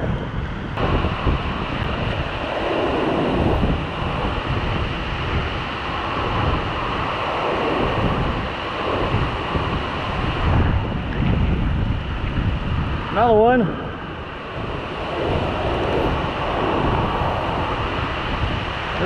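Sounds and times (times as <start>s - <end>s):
wind buffeting microphone: 0.0s - 19.0s
rushing river water: 0.8s - 11.1s.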